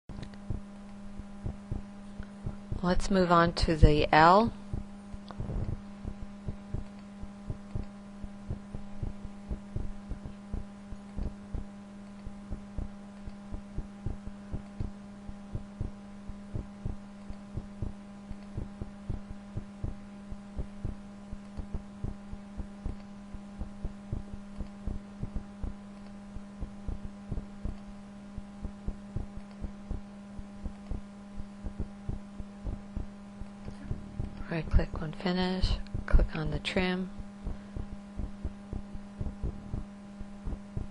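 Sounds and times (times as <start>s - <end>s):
steady electrical hum: 0.1s - 40.9s
computer mouse clicking: 18.3s - 18.5s, 29.4s - 29.6s.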